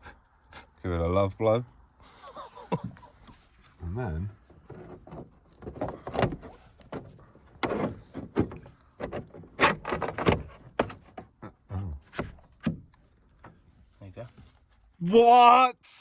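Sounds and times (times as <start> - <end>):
plastic panel knocking against car window: 4.7 - 11.3, 12.1 - 13.6.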